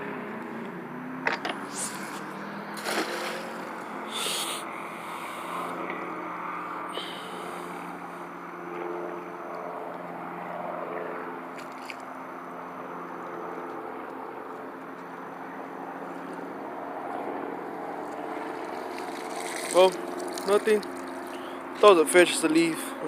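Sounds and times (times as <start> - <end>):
distant engine drone: 0.0 - 23.0.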